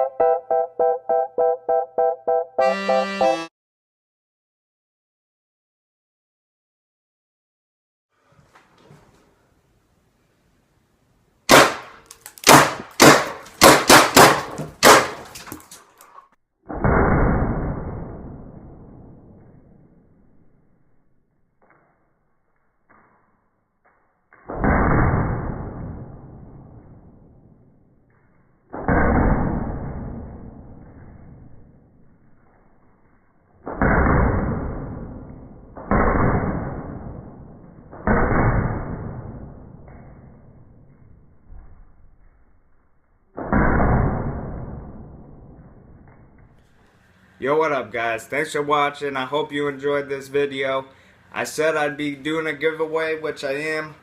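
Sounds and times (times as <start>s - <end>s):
paintball gun shots: 11.5s - 15.3s.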